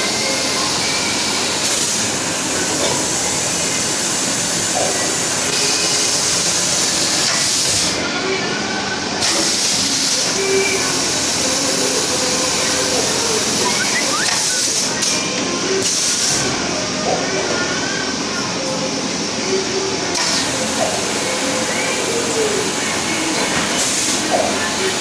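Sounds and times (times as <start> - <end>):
machine hissing: 9.2 - 16.5, 20.1 - 25.0
packaging machine running: 20.1 - 25.0.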